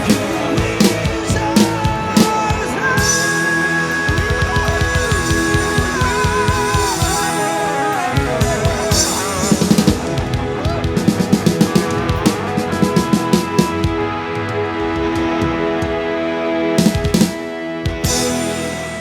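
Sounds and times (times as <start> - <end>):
fast run of drum hits: 0.0 - 14.2
drum kit: 0.0 - 19.0
electric guitar bending notes: 0.0 - 19.0.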